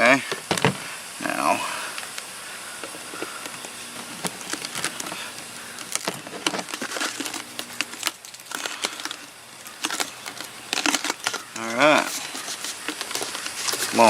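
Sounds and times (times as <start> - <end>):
faint steady hum: 0.0 - 14.0
plastic lid clicking and crackling: 5.8 - 13.9.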